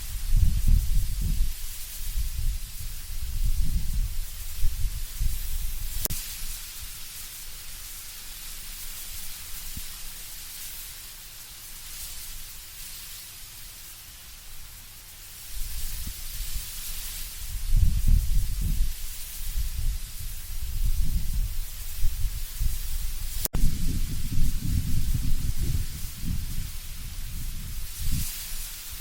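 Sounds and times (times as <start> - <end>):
wind gusts: 0.0 - 7.1, 15.5 - 29.0
wind rustling leaves: 0.0 - 29.0.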